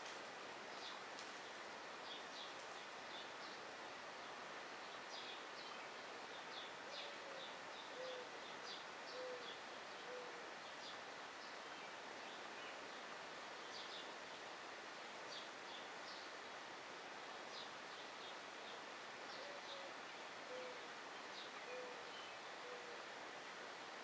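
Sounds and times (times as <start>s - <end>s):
steady outdoor hiss: 0.0s - 24.0s
dove cooing: 6.9s - 8.3s, 9.1s - 9.5s, 19.4s - 20.9s, 21.6s - 23.0s.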